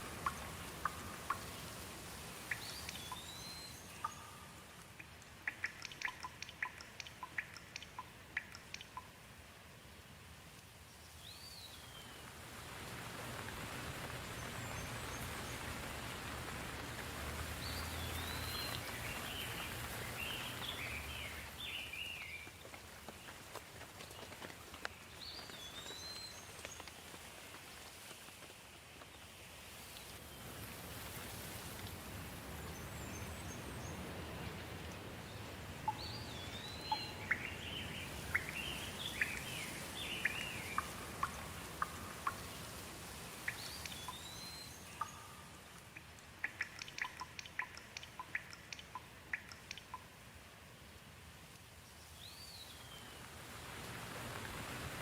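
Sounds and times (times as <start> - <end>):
birds chirping: 0.0 - 9.1, 17.5 - 22.6, 32.5 - 50.1
steady rain: 0.0 - 55.0.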